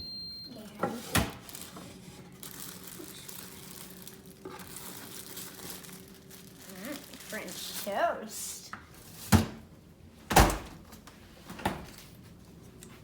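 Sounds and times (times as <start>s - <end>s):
low steady hum: 0.0s - 13.0s
plastic packaging crinkling: 1.4s - 8.0s.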